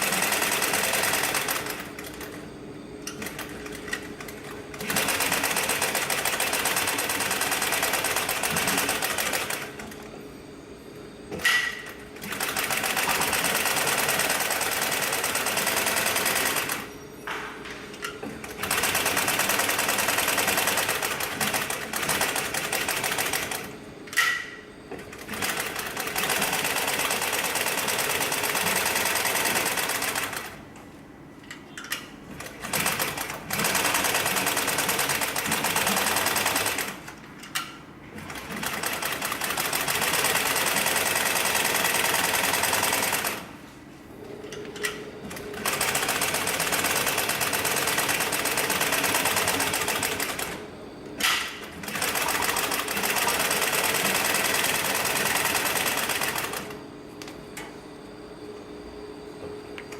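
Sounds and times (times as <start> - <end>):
industrial sewing machine stitching: 0.0 - 2.3, 3.1 - 10.0, 11.7 - 16.9, 18.4 - 23.8, 25.0 - 30.6, 32.3 - 37.2, 38.2 - 43.5, 45.3 - 50.6, 51.6 - 56.8.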